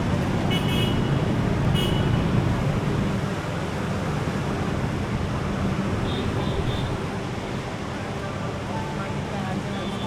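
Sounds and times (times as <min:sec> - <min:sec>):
road traffic rumble: 0:00.0 - 0:10.0.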